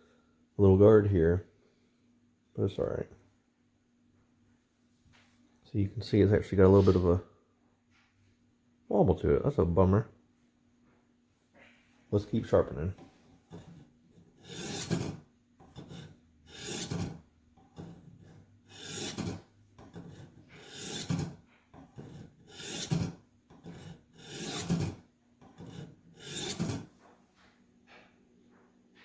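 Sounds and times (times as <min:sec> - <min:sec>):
knife sharpening strokes: 0:14.4 - 0:15.2, 0:15.8 - 0:17.2, 0:18.7 - 0:21.4, 0:22.0 - 0:25.0, 0:25.7 - 0:26.9.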